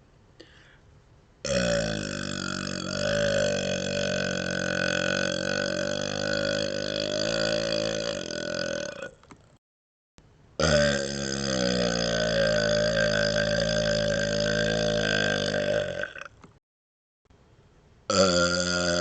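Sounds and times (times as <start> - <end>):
man burping: 1.4 - 9.3, 10.6 - 16.4, 18.1 - 19.0.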